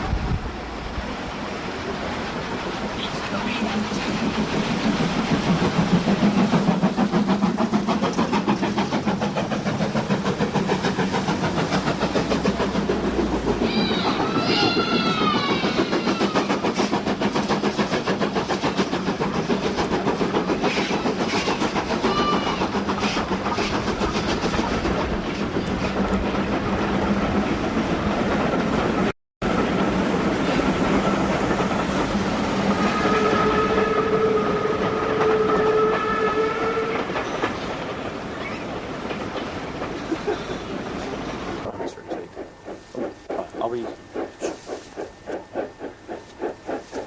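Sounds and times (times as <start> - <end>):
steam locomotive exhaust beats: 0.0 - 47.0
steam whistle chord: 32.7 - 37.1.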